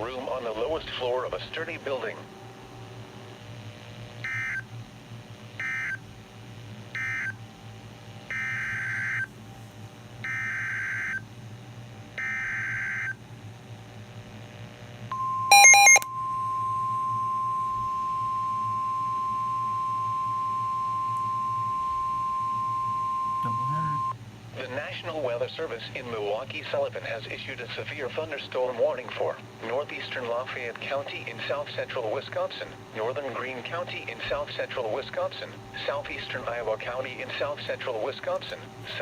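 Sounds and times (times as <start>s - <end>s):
steady warning alarm tone: 4.2s - 4.7s, 5.6s - 6.0s, 6.9s - 7.4s, 8.3s - 9.3s, 10.2s - 11.2s, 12.2s - 13.2s, 15.1s - 24.1s
brief loud beep: 15.2s - 24.1s.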